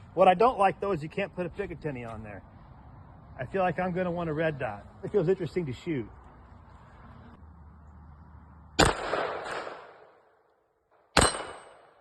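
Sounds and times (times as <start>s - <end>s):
pistol shots: 8.8s - 10.2s, 11.0s - 12.0s.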